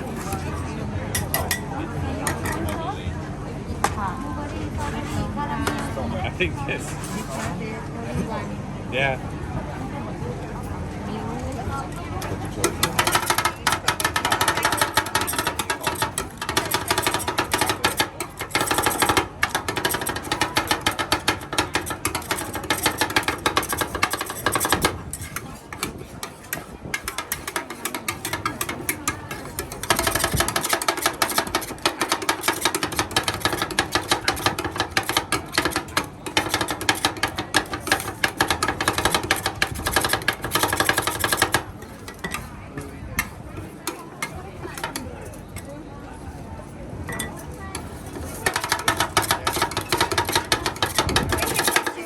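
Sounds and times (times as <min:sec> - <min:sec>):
cooking utensils clattering: 0:01.2 - 0:02.9, 0:12.2 - 0:46.4, 0:47.0 - 0:52.0.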